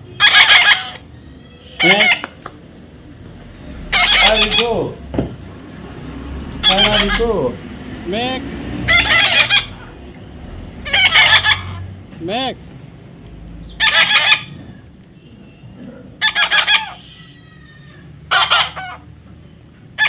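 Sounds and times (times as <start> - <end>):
parrot squawking: 0.1 - 2.4, 3.5 - 5.1, 6.5 - 7.6, 8.8 - 10.0, 10.8 - 12.0, 13.7 - 14.8, 16.2 - 19.1.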